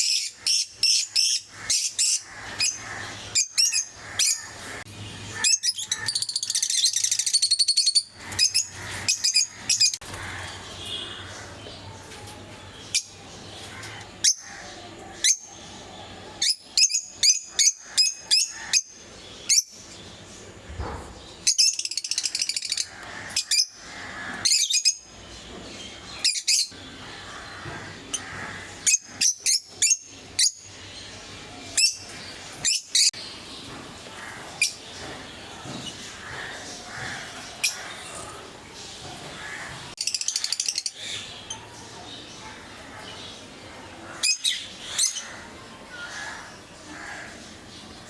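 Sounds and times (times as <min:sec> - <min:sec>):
lovebirds chattering: 0:00.0 - 0:48.0
lovebirds chirping: 0:00.0 - 0:48.0.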